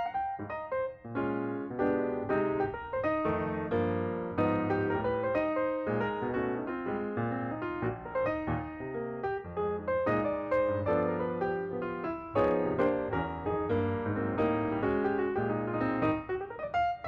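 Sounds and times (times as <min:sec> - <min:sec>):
piano music: 0:00.0 - 0:17.0.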